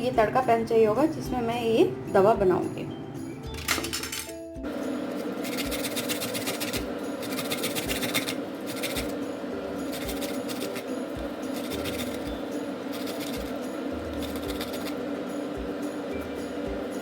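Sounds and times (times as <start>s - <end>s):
background music with soft beat: 0.1s - 17.0s
hand grater rasping: 5.4s - 9.2s, 9.8s - 10.9s, 11.5s - 15.0s.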